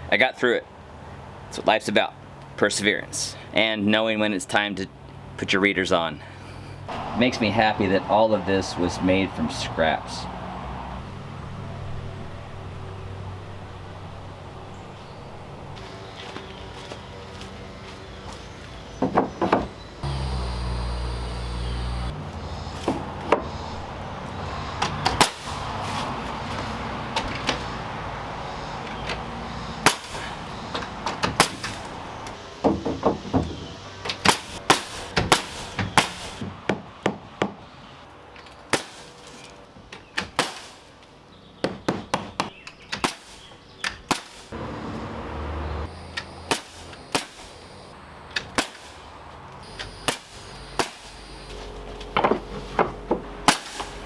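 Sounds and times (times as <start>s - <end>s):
tools knocking on wood: 19.0s - 19.7s
machine hum: 20.0s - 24.7s, 44.6s - 48.4s, 49.2s - 54.0s.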